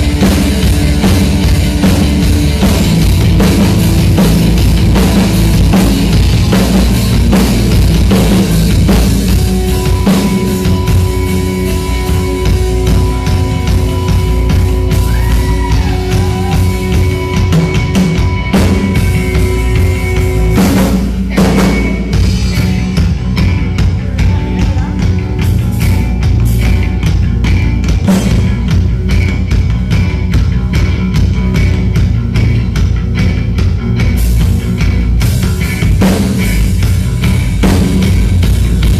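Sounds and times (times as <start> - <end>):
drum kit beat with rimshots: 0.0 - 38.9
heavy bass: 0.0 - 38.9
loud live rock music: 0.0 - 38.9.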